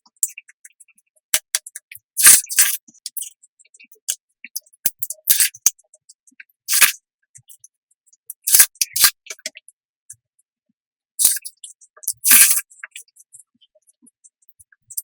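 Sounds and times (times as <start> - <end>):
crunchy wet chewing: 12.1 - 12.7.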